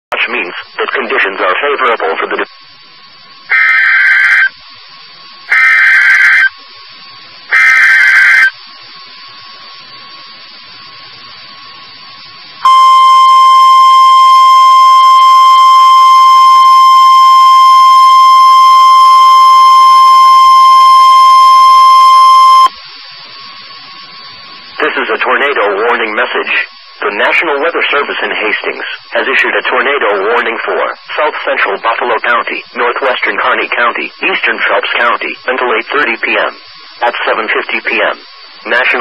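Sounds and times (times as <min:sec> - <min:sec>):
steady warning alarm tone: 0:00.1 - 0:39.0
digital data tone bursts: 0:03.5 - 0:04.6, 0:05.5 - 0:06.5, 0:07.5 - 0:08.6, 0:12.6 - 0:22.7, 0:24.8 - 0:39.0.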